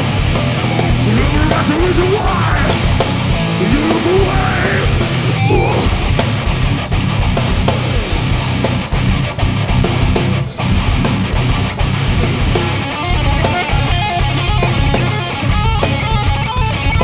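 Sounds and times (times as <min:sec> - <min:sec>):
heavy metal band playing live: 0:00.0 - 0:17.0
rising guitar pitch slides: 0:02.3 - 0:06.8.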